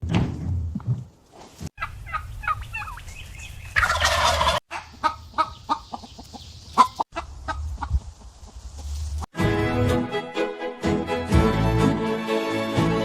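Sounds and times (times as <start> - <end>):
birds calling: 1.8 - 8.8.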